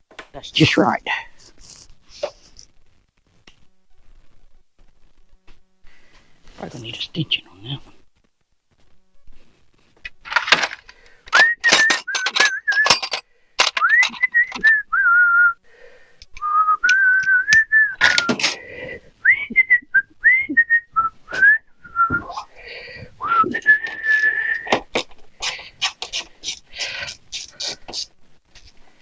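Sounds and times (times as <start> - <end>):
sharp clicks and knocks: 10.0 - 14.8
person whistling a tune: 11.3 - 13.1, 13.8 - 15.6, 16.4 - 18.4, 19.2 - 22.3, 23.2 - 24.7.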